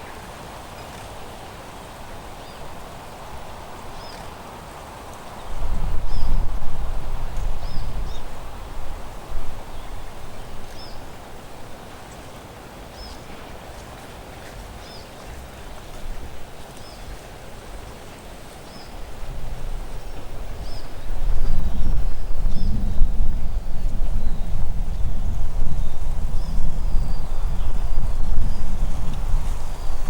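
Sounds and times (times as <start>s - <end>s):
steady hiss: 24.6s - 30.0s.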